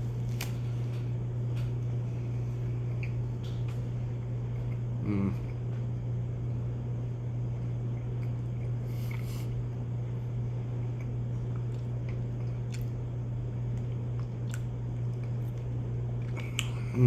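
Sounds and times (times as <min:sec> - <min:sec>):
low steady hum: 0:00.0 - 0:17.0
person chewing: 0:10.7 - 0:17.0.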